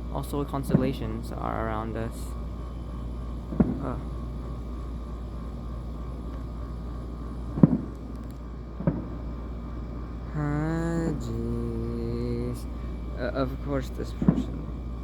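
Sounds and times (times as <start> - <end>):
distant fireworks bangs: 0.6 - 1.0, 3.4 - 9.4, 14.2 - 14.8
drawn-out voice: 10.2 - 14.6.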